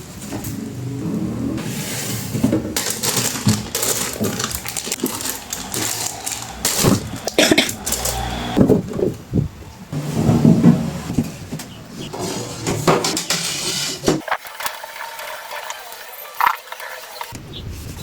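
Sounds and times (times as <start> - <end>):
household items knocking and clattering: 2.2 - 9.1, 10.0 - 15.1.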